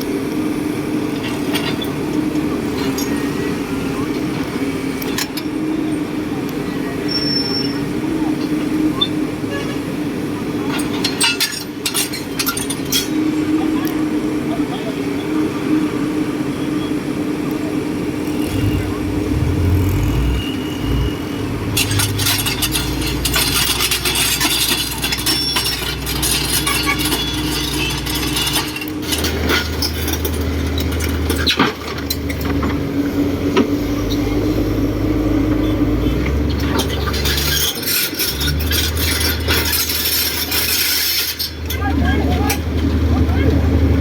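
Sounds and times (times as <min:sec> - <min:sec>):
diesel engine running: 0:17.9 - 0:37.5, 0:41.5 - 0:44.0
metallic clanks and clicks: 0:21.7 - 0:27.2.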